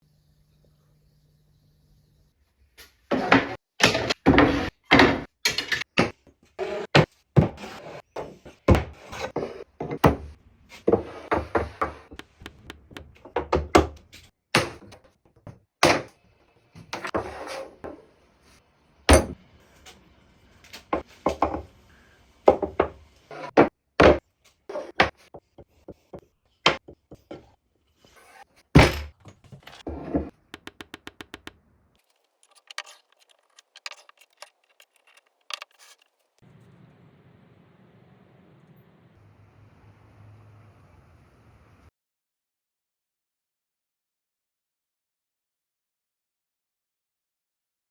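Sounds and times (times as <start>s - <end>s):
wooden pieces knocking: 12.1s - 13.7s, 28.8s - 31.6s.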